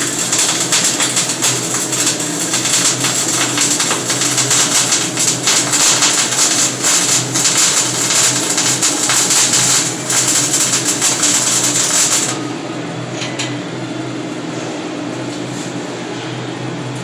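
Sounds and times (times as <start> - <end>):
welding arc crackling: 0.0 - 12.5
welder machine hum: 0.0 - 14.7.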